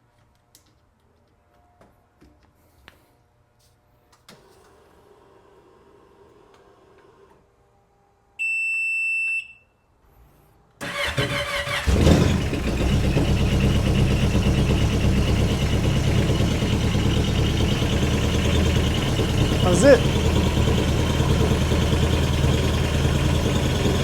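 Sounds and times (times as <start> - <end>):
engine idling: 10.8 - 24.0
starter cranking: 10.8 - 24.0.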